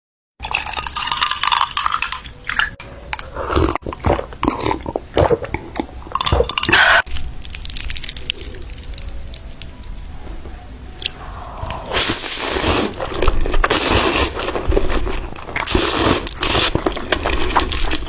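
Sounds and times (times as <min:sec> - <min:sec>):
chewing: 0:03.2 - 0:18.0.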